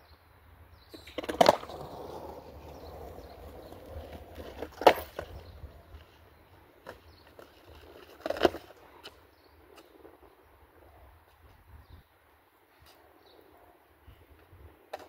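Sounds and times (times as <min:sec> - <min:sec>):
skateboard wheels rolling: 0:00.9 - 0:11.7, 0:14.3 - 0:15.0
skateboard clack: 0:01.0 - 0:06.1, 0:06.8 - 0:09.2.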